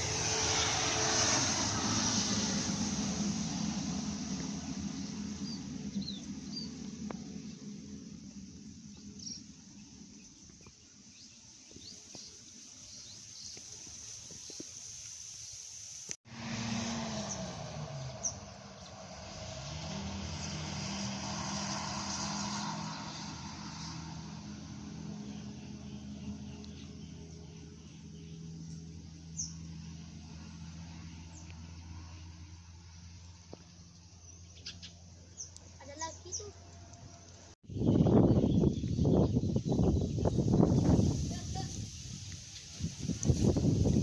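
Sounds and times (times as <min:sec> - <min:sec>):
bus engine: 0:00.0 - 0:10.3, 0:16.2 - 0:37.6
birds chirping: 0:03.7 - 0:14.7, 0:16.9 - 0:32.2, 0:32.8 - 0:44.0.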